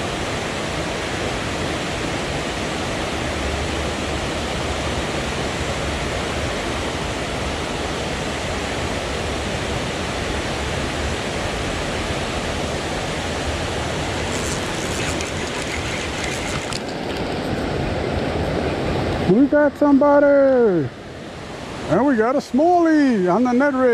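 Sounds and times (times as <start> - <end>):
fast-flowing river water: 0.0 - 23.9
faint scratchy sounds: 14.3 - 17.5.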